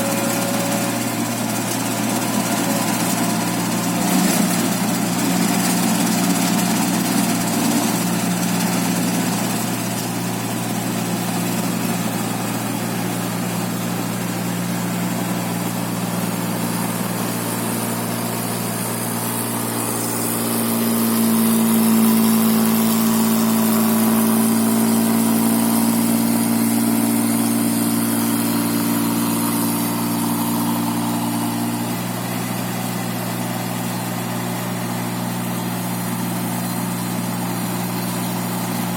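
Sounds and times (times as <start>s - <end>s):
high-pitched hum: 0.0s - 8.0s, 12.5s - 32.3s
rice machine engine drone: 0.0s - 38.9s.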